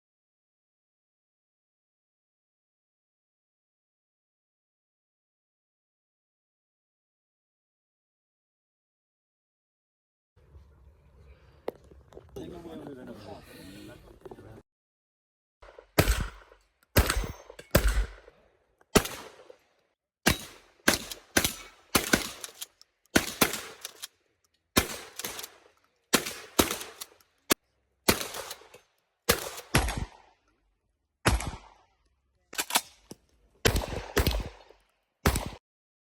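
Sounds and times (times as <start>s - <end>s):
shotgun shots with echo: 15.6s - 18.3s, 19.0s - 19.6s, 20.3s - 22.6s, 23.2s - 23.9s, 24.8s - 27.1s, 28.1s - 30.4s, 31.2s - 31.9s, 33.6s - 35.6s.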